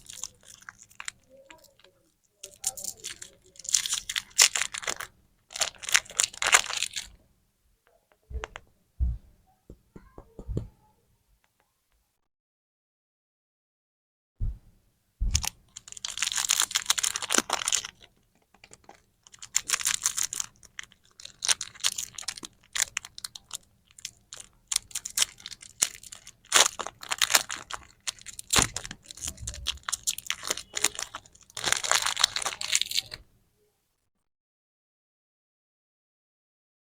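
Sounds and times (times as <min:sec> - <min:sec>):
wrappers crinkling and tearing: 0:00.0 - 0:07.2, 0:15.3 - 0:33.3
soft knocks: 0:08.3 - 0:10.8.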